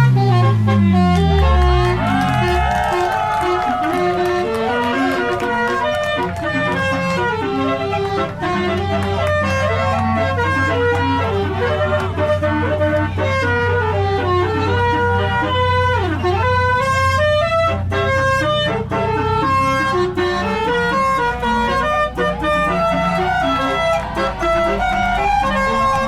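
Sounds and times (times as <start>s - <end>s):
multi-tone car horn melody: 0.0s - 26.0s.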